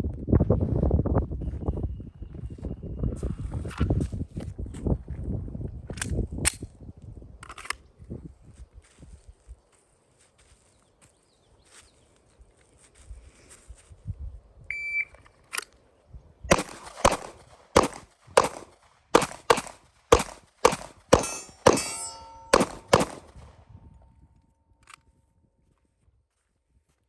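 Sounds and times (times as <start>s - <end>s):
shot timer beep: 14.7s - 15.2s
rapid pistol shots: 16.5s - 23.5s.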